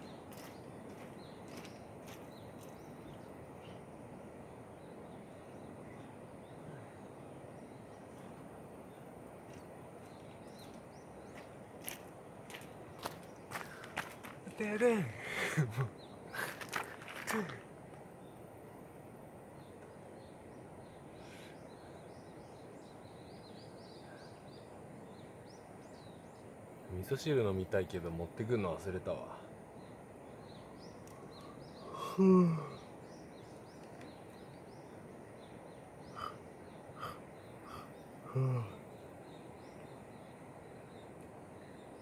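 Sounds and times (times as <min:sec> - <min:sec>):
quiet outdoor background noise: 0:00.0 - 0:42.0
small birds chirping faintly: 0:00.0 - 0:42.0
man's short low vocal sound: 0:31.8 - 0:32.8, 0:37.0 - 0:38.8.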